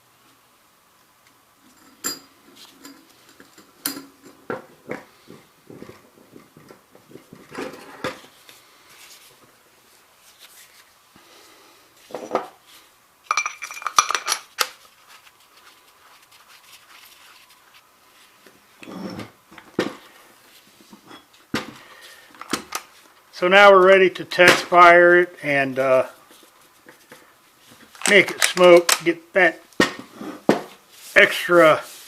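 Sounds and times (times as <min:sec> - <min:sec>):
steel parts clicking and clinking: 0:13.3 - 0:14.8.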